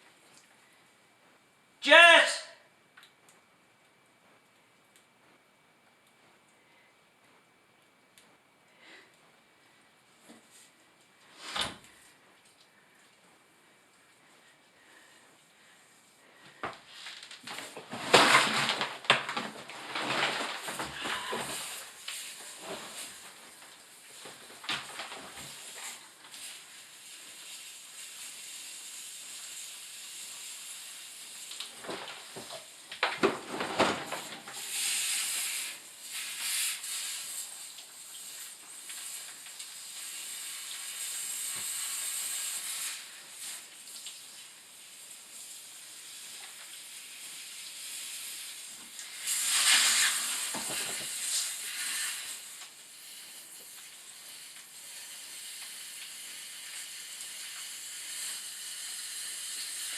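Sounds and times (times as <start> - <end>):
pressurised water hissing: 34.2 - 59.9.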